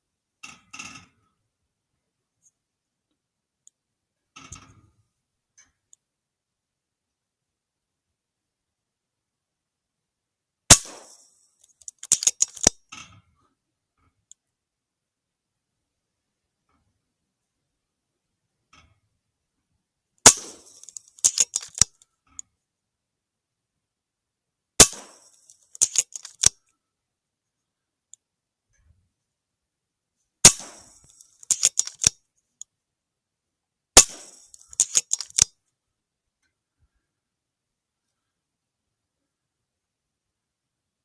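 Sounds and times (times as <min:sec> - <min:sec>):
air rifle shots cracking: 0:10.7 - 0:11.3, 0:12.0 - 0:12.7, 0:20.3 - 0:21.9, 0:24.8 - 0:26.5, 0:30.4 - 0:32.1, 0:34.0 - 0:35.5
quick run of clicks: 0:10.8 - 0:12.8, 0:20.3 - 0:22.0, 0:24.8 - 0:26.6, 0:30.5 - 0:32.2, 0:34.0 - 0:35.5.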